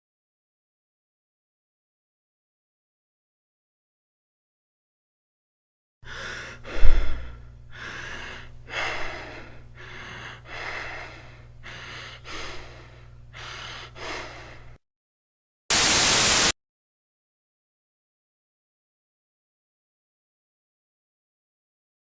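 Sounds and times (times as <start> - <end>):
person breathing: 6.0 - 14.8
burst of static noise: 15.7 - 16.6.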